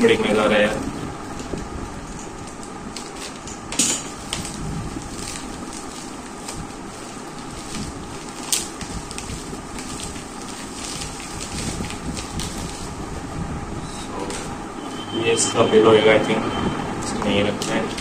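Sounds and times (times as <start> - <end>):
bubble wrap crinkling: 0.6 - 13.2.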